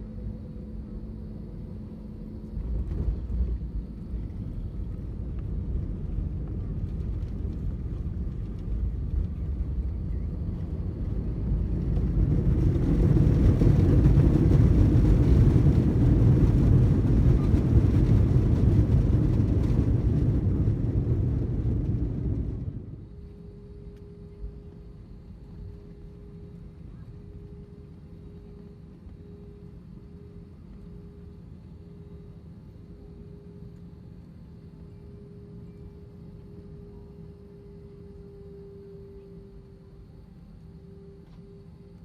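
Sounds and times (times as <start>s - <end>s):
jet engines and runway rumble: 0.0s - 42.0s
steady cabin hum: 20.5s - 42.0s
faint single tone: 34.5s - 42.0s.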